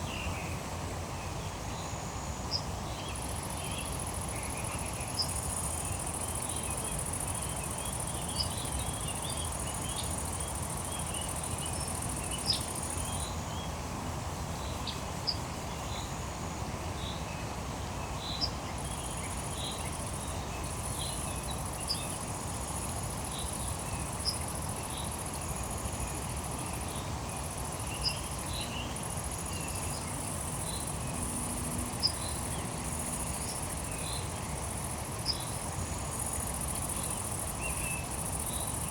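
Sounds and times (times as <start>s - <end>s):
low background noise: 0.0s - 38.9s
insects trilling: 1.4s - 38.9s
short insect chirps: 18.2s - 38.9s.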